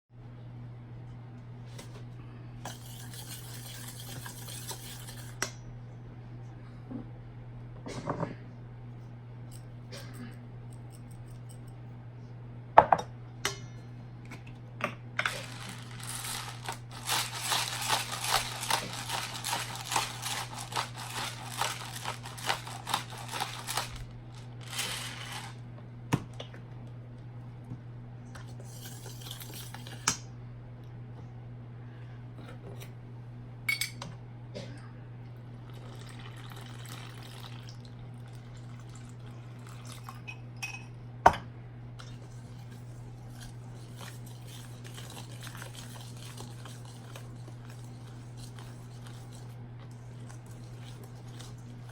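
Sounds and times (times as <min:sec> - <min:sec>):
steady low hum: 0:00.2 - 0:51.9
utensils knocking and scraping in bowl: 0:02.7 - 0:05.5, 0:15.2 - 0:25.5, 0:42.2 - 0:51.9.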